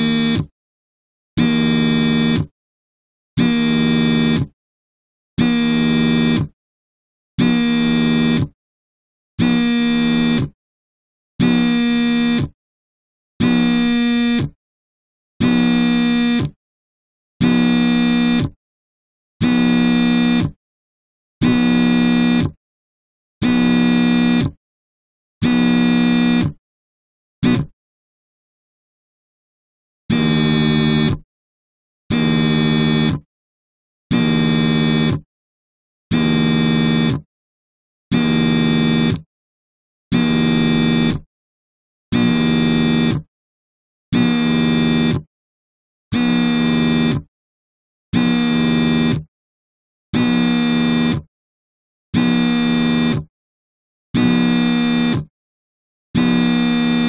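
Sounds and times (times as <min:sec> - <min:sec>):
phone vibrating on a table: 0:00.0 - 0:00.6, 0:01.4 - 0:02.6, 0:03.4 - 0:04.6, 0:05.4 - 0:06.6, 0:07.4 - 0:08.6, 0:09.4 - 0:10.5, 0:11.4 - 0:12.6, 0:13.4 - 0:14.6, 0:15.4 - 0:16.6, 0:17.4 - 0:18.6, 0:19.4 - 0:20.6, 0:21.4 - 0:22.6, 0:23.4 - 0:24.6, 0:25.4 - 0:26.6, 0:27.4 - 0:27.8, 0:30.1 - 0:31.3, 0:32.1 - 0:33.3, 0:34.1 - 0:35.3, 0:36.1 - 0:37.3, 0:38.1 - 0:39.2, 0:40.1 - 0:41.3, 0:42.1 - 0:43.3, 0:44.1 - 0:45.3, 0:46.1 - 0:47.3, 0:48.1 - 0:49.2, 0:50.1 - 0:51.2, 0:52.2 - 0:53.2, 0:54.2 - 0:55.3, 0:56.2 - 0:57.0.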